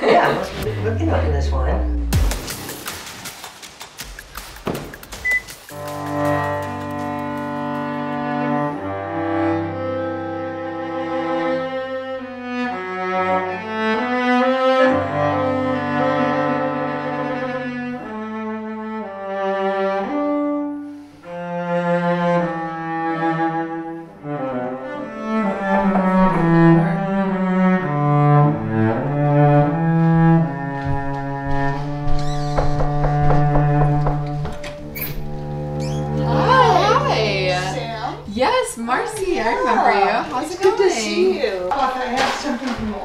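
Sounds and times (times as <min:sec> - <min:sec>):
solo cello bowed: 0:05.8 - 0:38.0.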